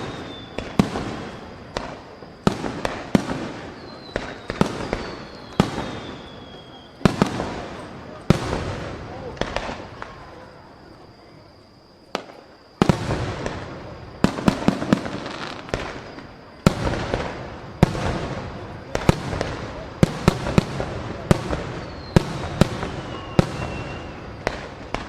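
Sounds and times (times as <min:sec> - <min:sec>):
faint falling whistle: 0:00.0 - 0:02.8, 0:03.6 - 0:08.2, 0:09.1 - 0:16.6, 0:21.4 - 0:24.7
fireworks shells bursting: 0:00.0 - 0:10.2.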